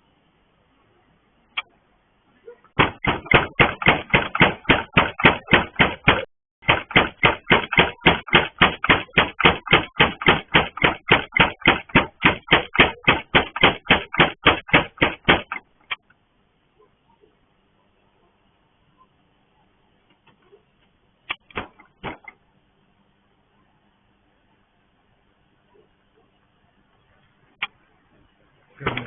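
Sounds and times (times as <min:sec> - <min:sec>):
rapid knocking on a gate: 0:02.8 - 0:15.6.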